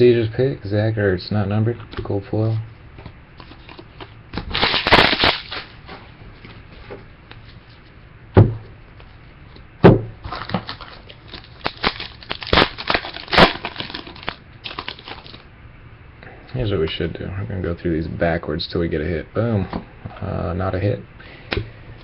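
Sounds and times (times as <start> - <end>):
cards being handled: 3.4 - 7.9
foil wrapper crinkling and tearing: 4.4 - 5.8, 10.3 - 15.4.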